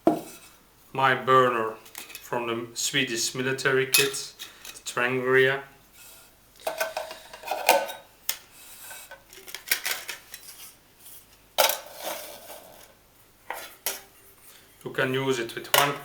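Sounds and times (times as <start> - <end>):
metal pots clanking and scraping: 6.6 - 8.1, 11.6 - 12.9.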